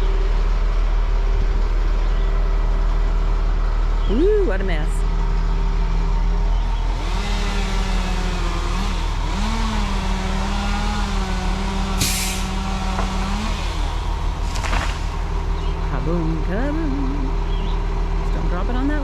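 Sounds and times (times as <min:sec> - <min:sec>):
deep steady hum: 0:00.0 - 0:19.0
machinery engine under load: 0:00.0 - 0:19.0
air hiss: 0:12.0 - 0:12.5.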